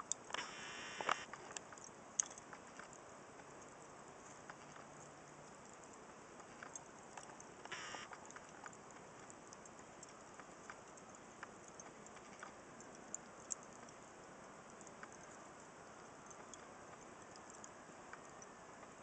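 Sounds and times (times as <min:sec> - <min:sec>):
fire crackling and popping: 0:00.0 - 0:19.0
soft steady hiss: 0:00.0 - 0:19.0
short hissing burst: 0:07.7 - 0:08.1.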